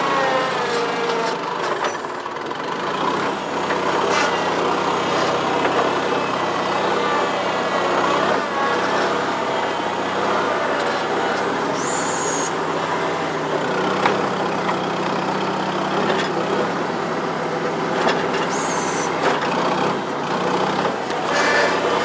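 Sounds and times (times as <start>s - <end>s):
skid steer engine running: 0.0s - 22.0s
brief high-pitched whines: 11.8s - 12.6s, 18.5s - 19.1s.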